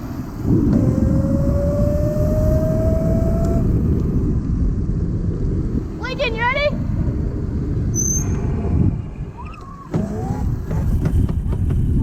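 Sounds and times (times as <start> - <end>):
scooter engine whine: 0.0 - 4.4
wind on microphone: 0.0 - 12.0.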